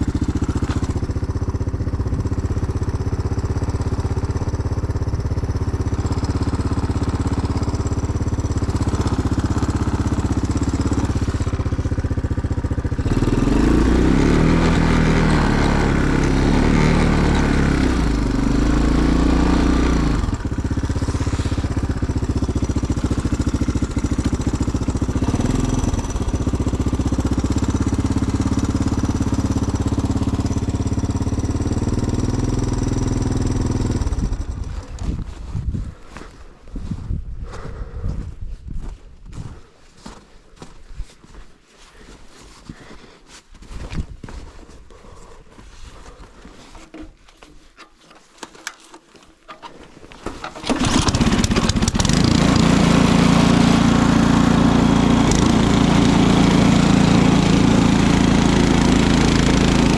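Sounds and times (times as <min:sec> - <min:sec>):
small gasoline engine running: 0:00.0 - 0:35.4, 0:50.2 - 0:59.9.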